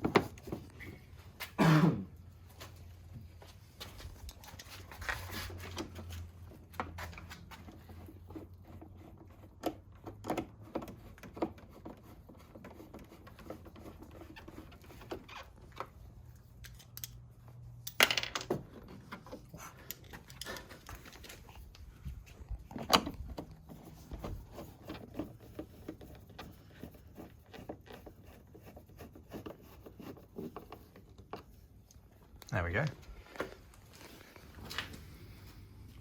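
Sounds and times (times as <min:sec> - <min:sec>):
hand tools and parts clicking: 0:15.8 - 0:21.8.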